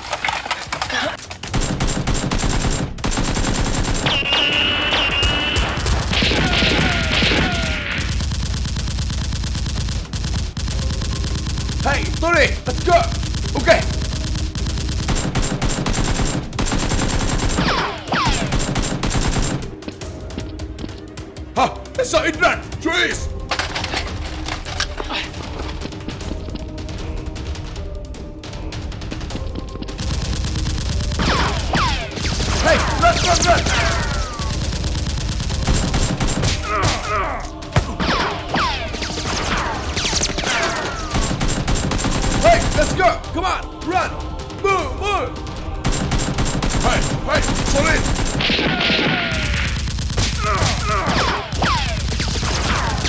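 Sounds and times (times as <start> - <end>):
rapid automatic gunfire: 0.0 - 19.8, 29.9 - 36.6, 38.0 - 43.8, 45.4 - 53.0
falling whistles: 4.1 - 5.7.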